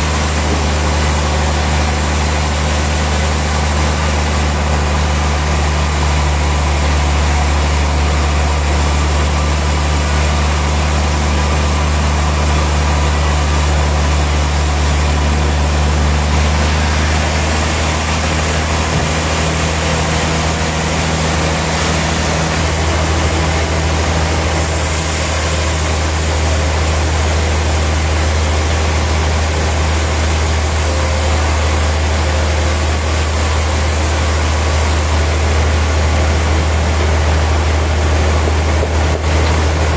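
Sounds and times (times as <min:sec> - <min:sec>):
sawmill machinery hum: 0:00.0 - 0:39.9.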